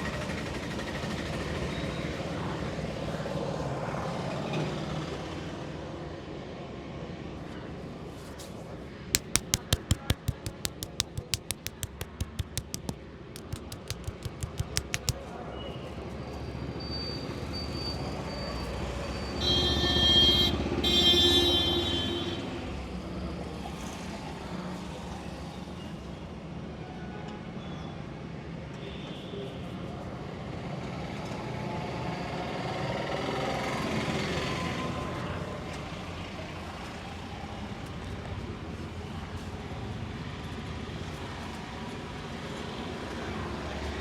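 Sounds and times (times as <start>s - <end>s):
hands slapping on head: 9.2s - 15.2s.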